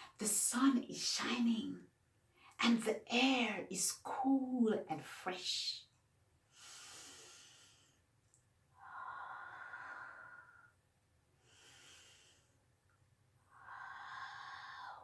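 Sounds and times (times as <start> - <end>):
person breathing deeply: 8.8 - 10.8, 11.4 - 12.6, 13.5 - 15.0.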